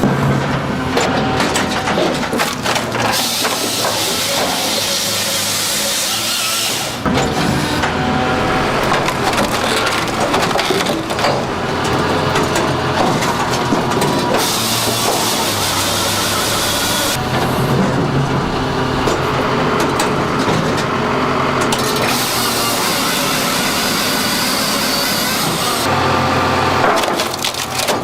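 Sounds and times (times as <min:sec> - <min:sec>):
wood chipper crushing wood: 0:00.0 - 0:28.0
steady engine hum: 0:06.9 - 0:27.6
wood splintering and cracking: 0:07.1 - 0:25.9, 0:26.8 - 0:28.0.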